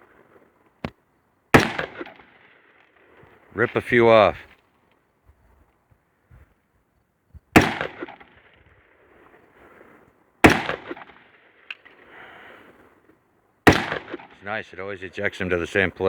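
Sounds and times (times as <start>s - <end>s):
gunshots echoing: 1.5s - 2.7s, 7.6s - 8.9s, 10.4s - 11.7s, 13.7s - 14.8s.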